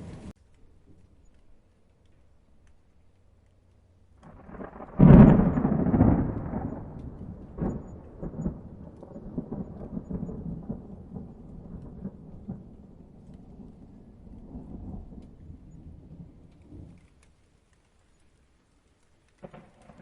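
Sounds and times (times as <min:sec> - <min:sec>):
thunder crackles: 0:00.0 - 0:01.4, 0:04.1 - 0:20.0
thunder crash and rumble: 0:04.2 - 0:17.0, 0:19.4 - 0:20.0.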